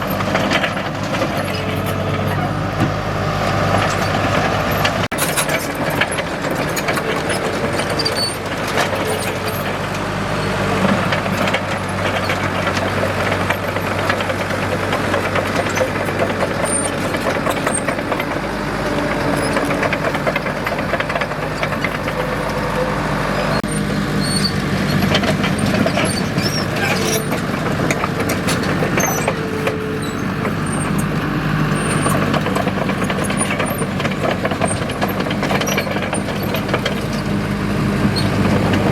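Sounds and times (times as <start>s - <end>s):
bulldozer diesel engine running: 0.0s - 38.9s
rapid clicks and knocks: 11.0s - 18.5s, 19.3s - 22.6s, 24.9s - 31.0s, 31.8s - 37.1s.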